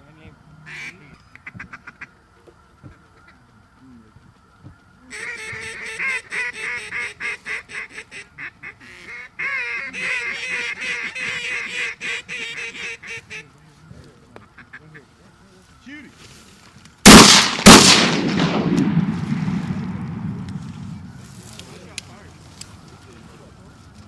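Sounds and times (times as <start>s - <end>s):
waterfowl honking and clucking: 0.2s - 3.6s, 4.6s - 15.9s.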